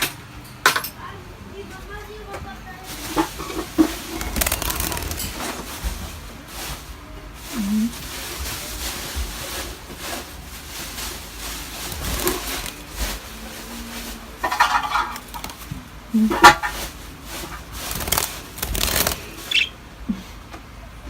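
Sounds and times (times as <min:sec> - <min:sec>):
birds squawking: 0:18.2 - 0:19.9
short high bird chirp: 0:19.5 - 0:19.8.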